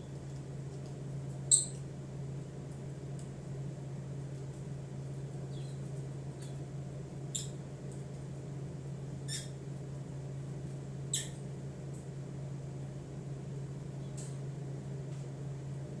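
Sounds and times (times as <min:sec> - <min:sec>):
budgerigar chirps: 0:09.3 - 0:09.6, 0:11.1 - 0:11.4.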